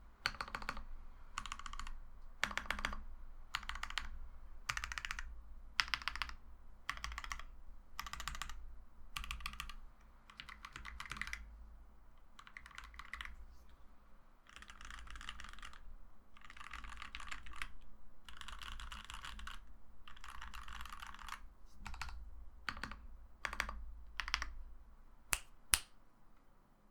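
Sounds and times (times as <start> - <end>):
mechanical keyboard typing: 0.2 - 8.6, 9.2 - 11.5, 12.4 - 13.4, 14.5 - 15.8, 16.4 - 24.6.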